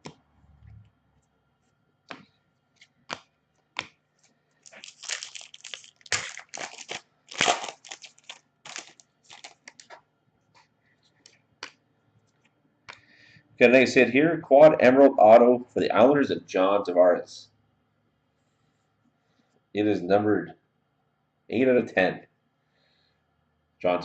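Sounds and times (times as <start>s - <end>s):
wrapper tearing and crinkling: 4.6s - 10.0s.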